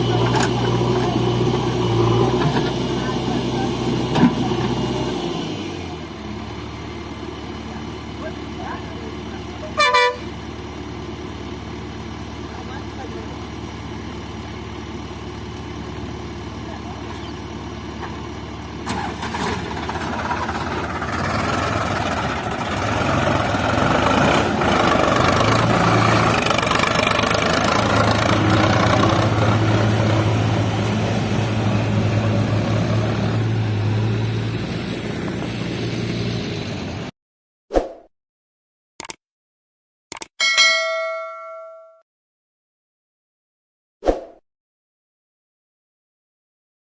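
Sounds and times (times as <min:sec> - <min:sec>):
heavy diesel engine running: 0:00.0 - 0:37.1.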